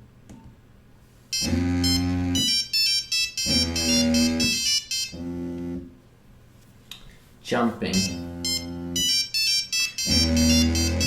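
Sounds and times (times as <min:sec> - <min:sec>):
phone ringtone melody: 0:01.3 - 0:05.3, 0:07.9 - 0:11.0.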